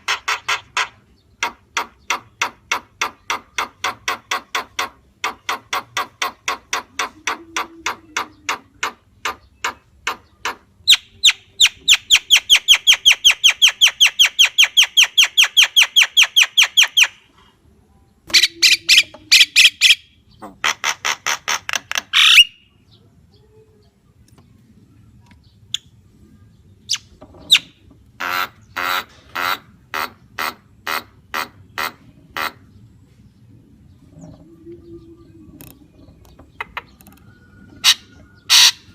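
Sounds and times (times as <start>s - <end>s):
myna squawking calls: 18.3s - 22.7s, 37.7s - 38.9s.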